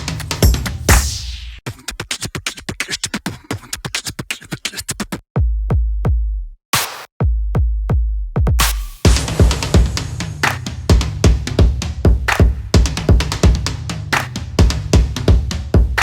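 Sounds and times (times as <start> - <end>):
electronic music with drum-machine beats: 0.0 - 2.3, 8.4 - 16.0
heavy deep bass drum hits: 8.4 - 13.8.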